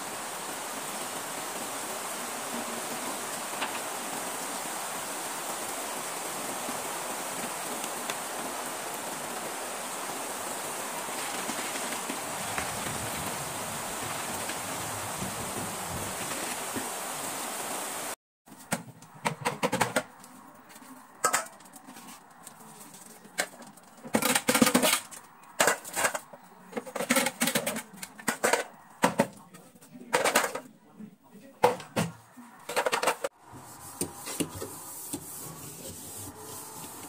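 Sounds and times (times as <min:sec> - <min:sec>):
household items clattering: 0:11.1 - 0:16.6, 0:18.5 - 0:30.7, 0:31.6 - 0:33.3.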